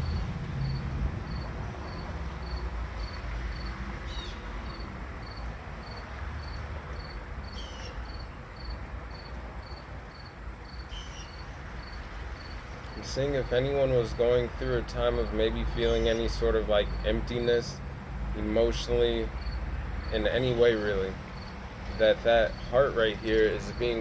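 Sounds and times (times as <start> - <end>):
insect chirping: 0.0 - 13.0, 19.3 - 20.3, 21.3 - 21.6.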